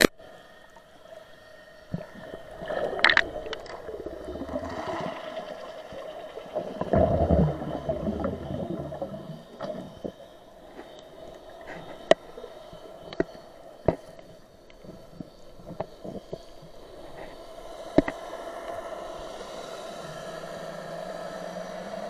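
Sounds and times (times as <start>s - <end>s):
steady hum: 0.0s - 22.0s
water gurgling and bubbling: 1.9s - 13.2s.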